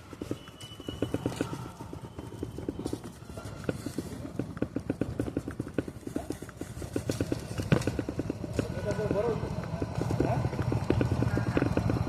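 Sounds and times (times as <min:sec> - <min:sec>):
clip-clop knocks: 0:00.0 - 0:12.0.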